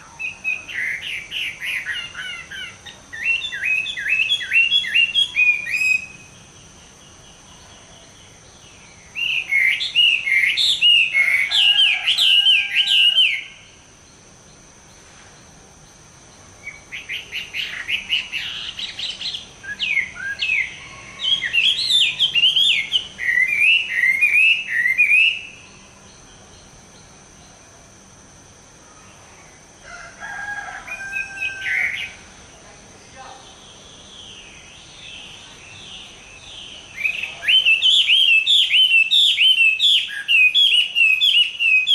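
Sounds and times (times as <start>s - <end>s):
bird singing whistled notes: 0.0s - 13.7s, 16.6s - 27.1s, 33.6s - 41.9s.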